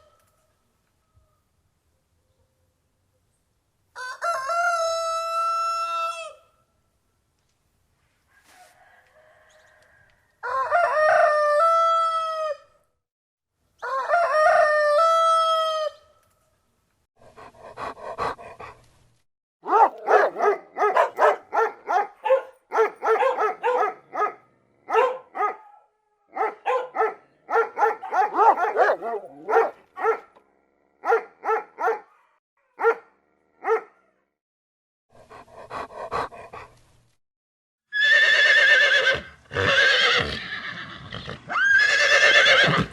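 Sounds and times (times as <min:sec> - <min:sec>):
rooster crowing: 0:03.9 - 0:06.5, 0:08.3 - 0:12.7, 0:13.8 - 0:16.1
dog barking: 0:19.6 - 0:30.4, 0:31.0 - 0:34.1
horse neighing: 0:37.9 - 0:42.9.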